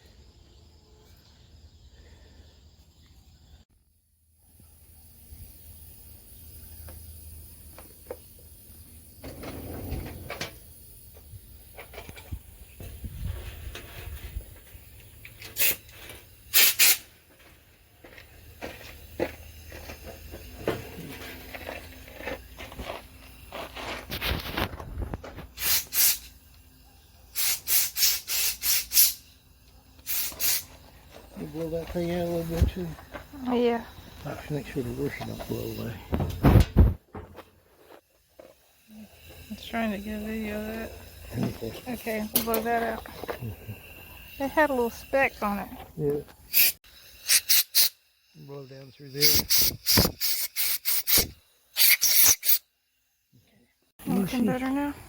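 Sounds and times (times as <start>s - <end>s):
hissing spray bursts: 14.8s - 17.2s, 25.4s - 31.0s, 46.5s - 53.1s.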